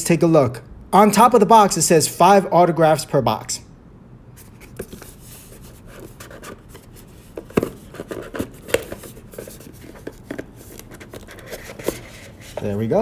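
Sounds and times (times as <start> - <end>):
cardboard scraping and rubbing: 4.4 - 13.0.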